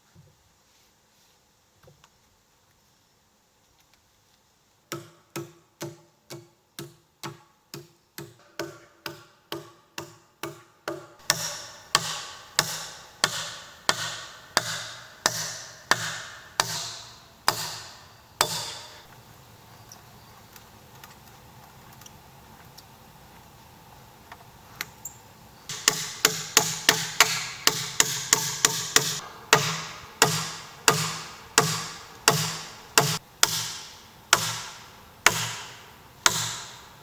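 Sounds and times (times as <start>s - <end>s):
hand tool striking wood: 4.9s - 19.1s, 25.7s - 36.9s.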